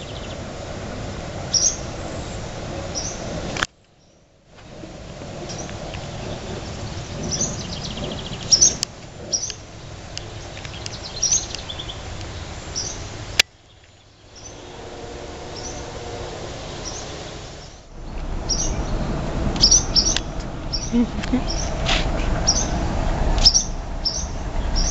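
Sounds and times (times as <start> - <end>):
swallows chirping sharply: 1.5 - 3.3, 5.5 - 16.0, 16.8 - 21.8, 22.5 - 22.8, 23.4 - 24.9.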